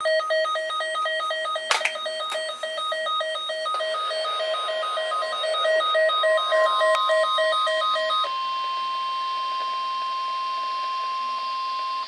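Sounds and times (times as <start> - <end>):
rapid electronic alarm beeping: 0.0 - 8.3
sharp click: 1.7 - 2.5.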